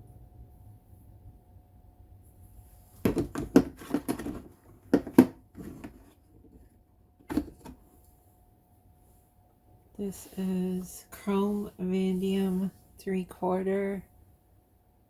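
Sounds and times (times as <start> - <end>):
sockets clicking and knocking: 3.1 - 5.8.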